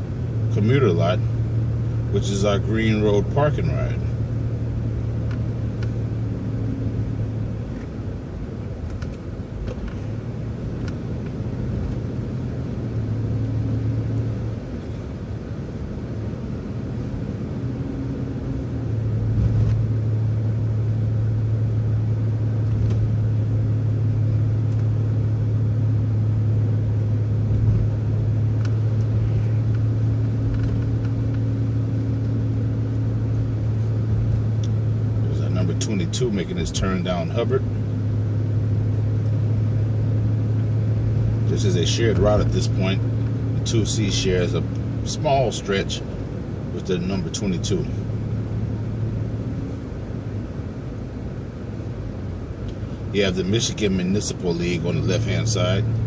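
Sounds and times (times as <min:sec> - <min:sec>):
bus engine drone: 0:00.0 - 0:56.0
road noise: 0:00.0 - 0:56.0.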